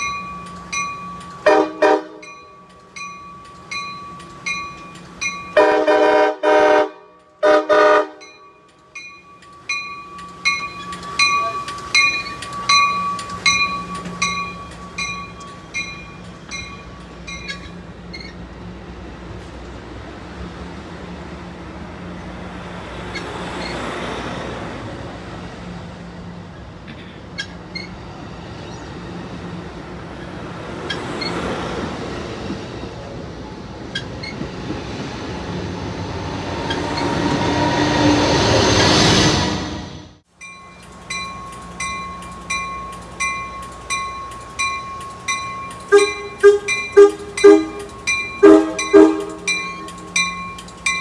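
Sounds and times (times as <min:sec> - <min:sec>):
train wheel clicks: 0:00.0 - 0:05.9, 0:08.2 - 0:18.5, 0:26.8 - 0:32.6, 0:40.4 - 0:51.0
railway warning bell dinging: 0:00.0 - 0:18.6, 0:26.4 - 0:38.9, 0:40.3 - 0:51.0
train rumbling over rails: 0:00.0 - 0:51.0.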